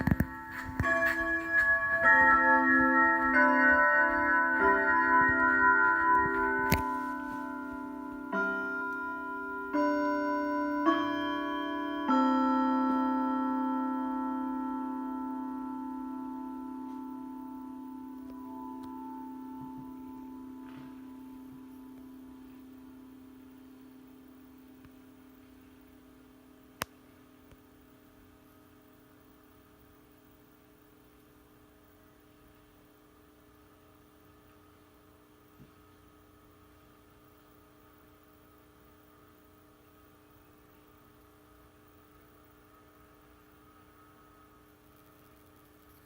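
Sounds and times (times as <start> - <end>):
electronic chime tone: 0.0 - 25.3
faint electrical hum: 0.0 - 46.0.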